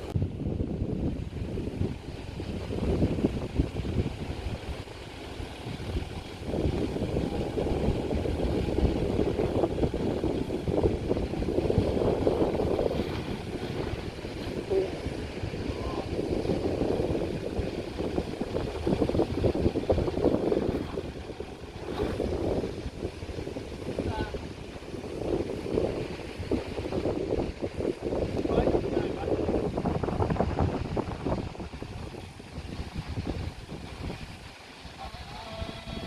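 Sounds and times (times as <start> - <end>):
four-wheel drive engine running: 1.0 - 28.3.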